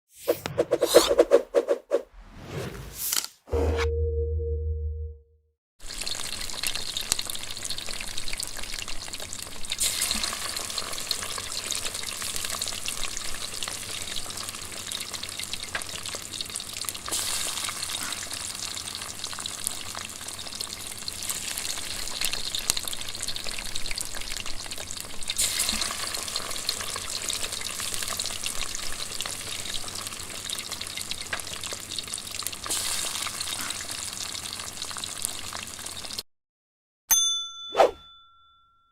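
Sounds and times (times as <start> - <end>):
bacon sizzling in a pan: 5.8 - 36.2.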